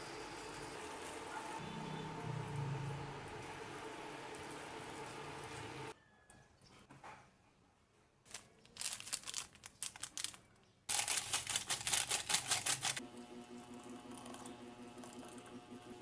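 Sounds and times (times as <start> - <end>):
packaging crinkling: 8.3 - 13.0.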